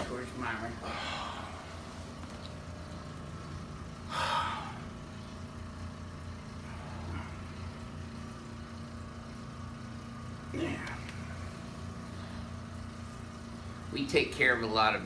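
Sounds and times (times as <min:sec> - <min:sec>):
low mechanical hum: 0:00.0 - 0:15.0.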